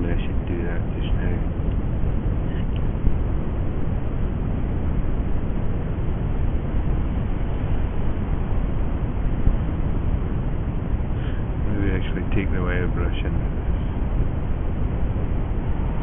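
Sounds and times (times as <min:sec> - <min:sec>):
low rumbling noise: 0:00.0 - 0:16.0.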